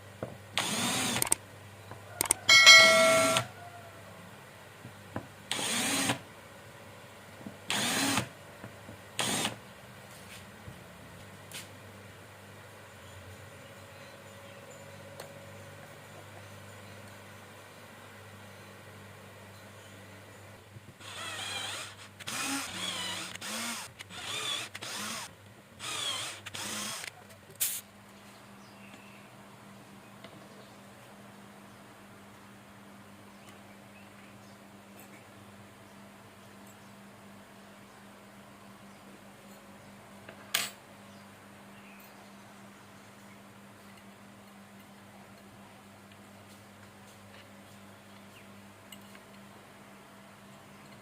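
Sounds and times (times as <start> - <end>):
small power tool whining: 0.6 - 1.4, 5.5 - 6.2, 7.7 - 8.3, 21.0 - 27.1.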